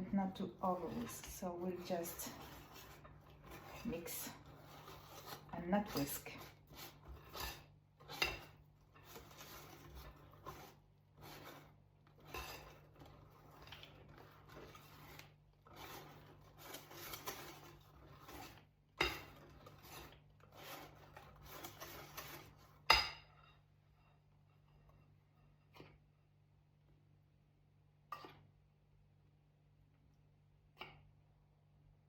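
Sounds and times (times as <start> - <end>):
whisk scraping in a bowl: 0.2 - 26.0.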